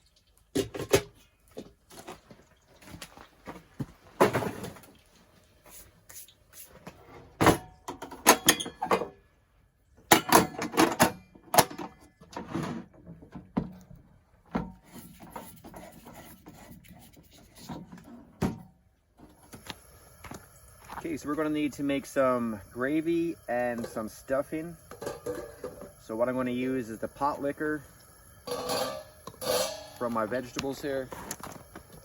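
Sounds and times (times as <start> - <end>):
metal pots and lid clanking: 7.5 - 9.2, 10.1 - 12.4, 23.7 - 24.1, 24.8 - 26.0, 28.4 - 32.0
short metallic ring: 28.5 - 30.0.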